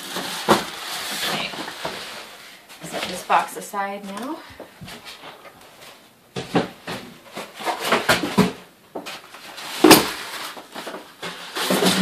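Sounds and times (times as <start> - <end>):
cardboard box scraping and rustling: 9.2 - 12.0.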